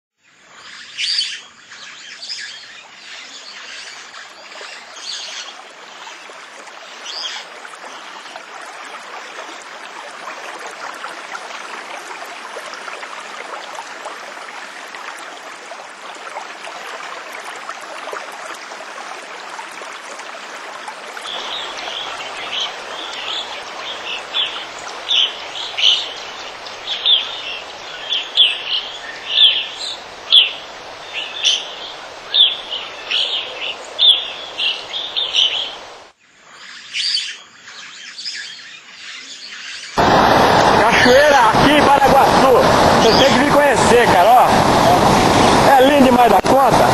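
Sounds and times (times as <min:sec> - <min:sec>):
waterfall rushing: 0:05.4 - 0:36.1, 0:40.0 - 0:46.9
birds calling: 0:21.2 - 0:36.0
bird chirping: 0:21.3 - 0:35.9.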